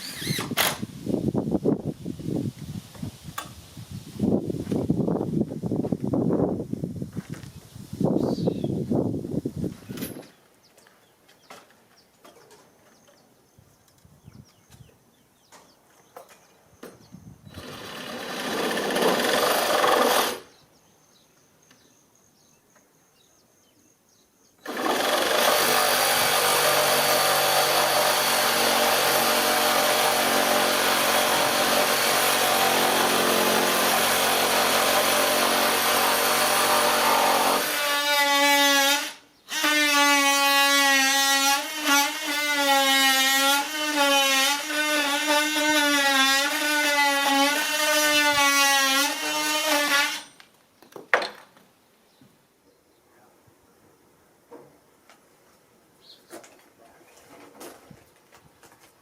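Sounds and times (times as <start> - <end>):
power tool humming: 24.6 - 50.2.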